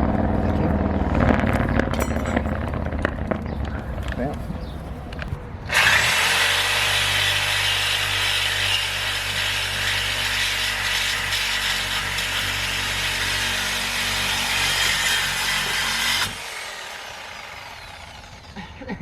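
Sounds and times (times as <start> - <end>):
power saw cutting metal pipe: 5.7 - 18.6.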